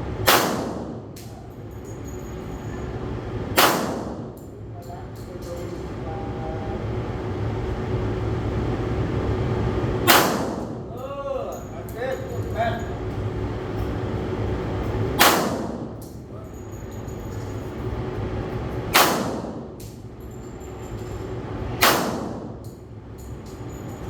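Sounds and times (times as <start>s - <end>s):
shotgun shots echoing: 0.3s - 1.0s, 3.6s - 4.2s, 10.1s - 10.8s, 15.2s - 16.0s, 19.0s - 19.6s, 21.8s - 22.5s.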